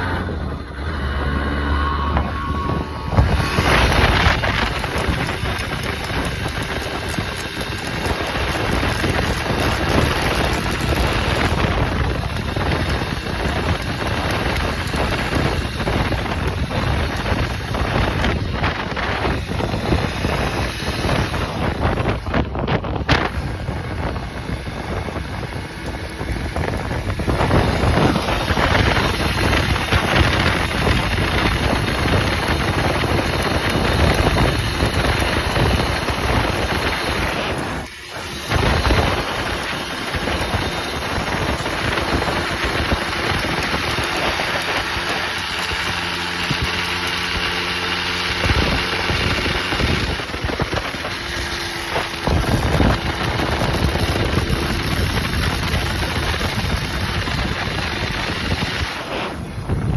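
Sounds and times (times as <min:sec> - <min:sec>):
two-stroke engine running: 0:00.0 - 0:59.9.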